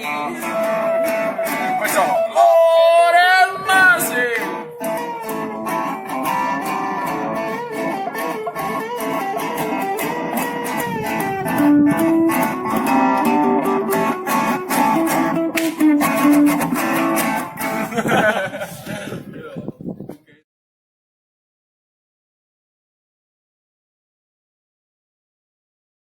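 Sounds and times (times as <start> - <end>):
guitars playing instrumental: 0.0 - 19.2.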